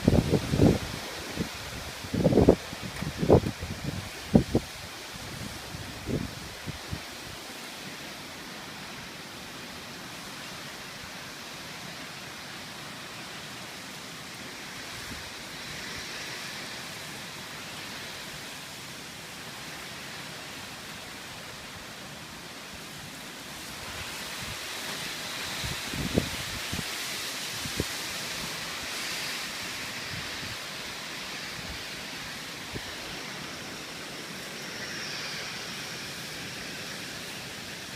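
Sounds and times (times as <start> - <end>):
wind buffeting microphone: 0.0 - 7.1
wind and rain rushing: 0.0 - 37.9.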